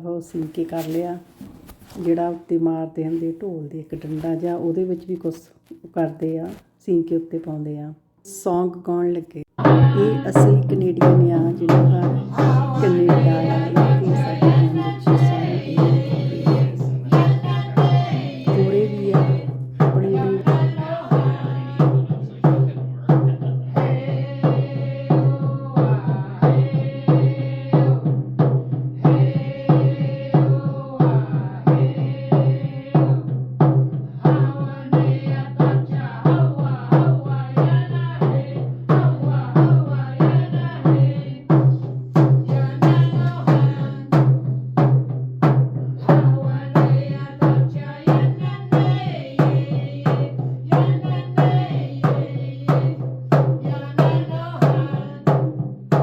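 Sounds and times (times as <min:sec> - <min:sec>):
group singing: 0:09.6 - 0:28.1, 0:29.0 - 0:33.2, 0:34.2 - 0:44.4, 0:46.0 - 0:55.5
hand drums beating: 0:09.6 - 0:56.0.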